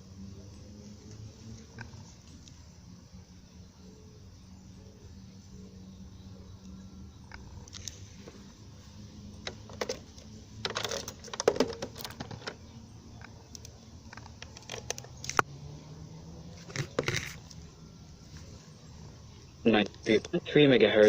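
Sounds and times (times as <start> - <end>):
static crackles and clicks: 19.3 - 21.0.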